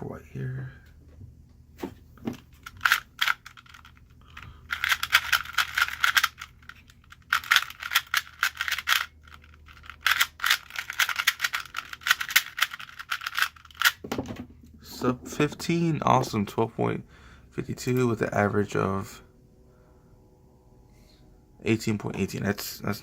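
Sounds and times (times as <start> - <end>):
speed cube clicking clatter: 2.6 - 14.0.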